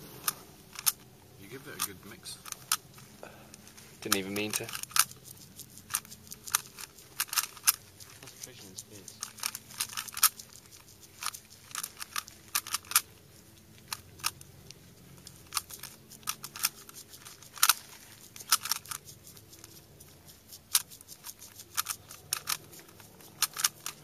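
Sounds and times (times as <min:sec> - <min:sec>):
puzzle cube clicking as twisted: 0:00.2 - 0:01.1, 0:04.1 - 0:13.2, 0:15.2 - 0:24.0.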